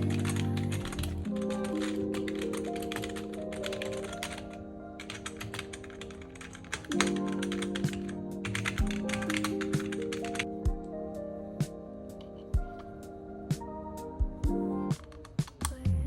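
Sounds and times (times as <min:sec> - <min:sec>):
mechanical keyboard typing: 0:00.0 - 0:10.5
background music: 0:00.0 - 0:16.0.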